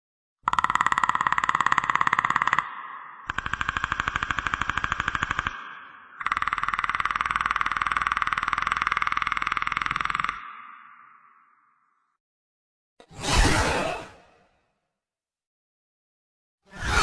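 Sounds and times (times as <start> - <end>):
creature rattling clicks: 0.4 - 10.7.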